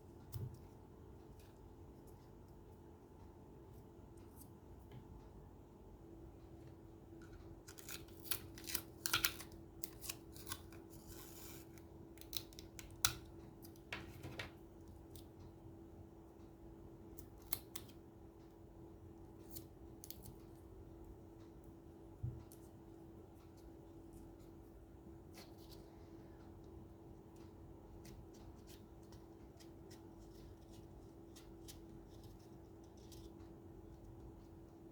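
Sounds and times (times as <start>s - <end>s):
faint steady hum: 0.0s - 34.9s.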